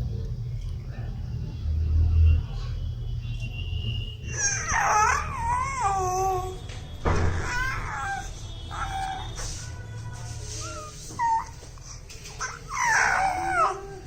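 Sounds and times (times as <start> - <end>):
baby squealing and whining: 4.3 - 6.6, 7.4 - 9.3, 10.6 - 14.0.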